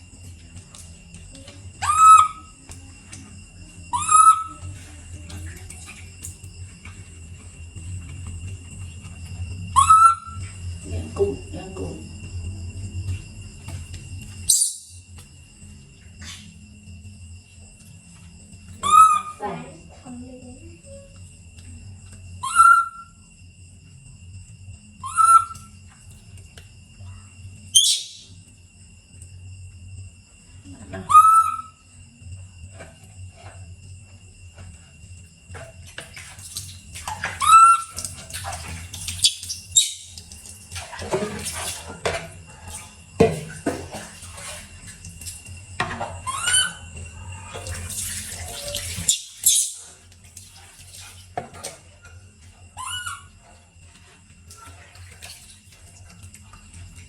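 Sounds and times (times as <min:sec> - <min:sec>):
water sloshing and splashing: 0:00.0 - 0:22.4, 0:32.4 - 0:57.0
baby monkey coo call: 0:01.8 - 0:02.5, 0:03.9 - 0:04.6, 0:09.8 - 0:10.4, 0:18.8 - 0:19.4, 0:22.4 - 0:23.1, 0:25.0 - 0:25.7, 0:31.0 - 0:31.8, 0:37.4 - 0:38.0
short sharp squeak: 0:27.8 - 0:28.2, 0:49.0 - 0:49.8
high squeak: 0:48.6 - 0:49.8.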